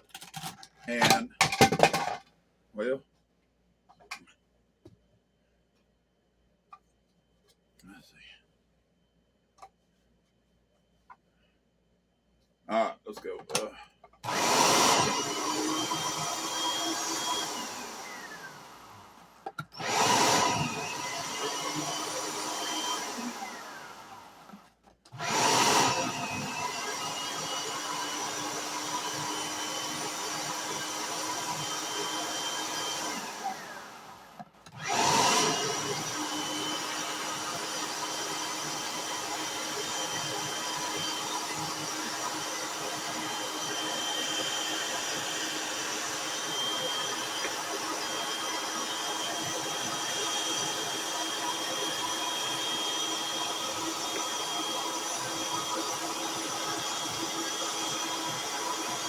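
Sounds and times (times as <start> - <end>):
food shredder motor running: 14.2 - 59.0.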